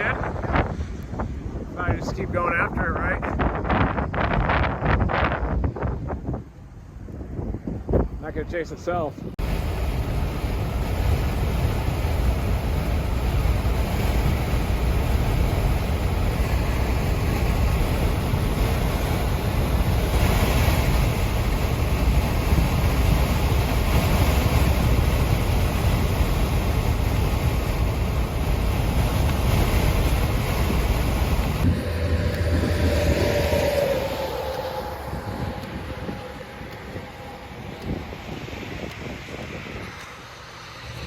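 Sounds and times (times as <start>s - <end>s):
low road rumble: 0.0s - 41.0s
wind hiss: 0.0s - 41.0s.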